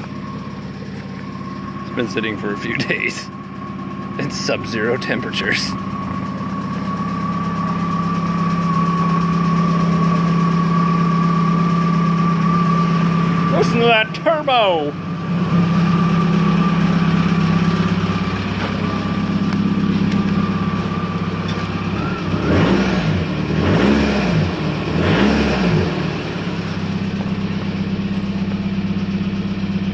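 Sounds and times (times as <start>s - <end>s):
diesel engine idling and revving: 0.0s - 29.9s.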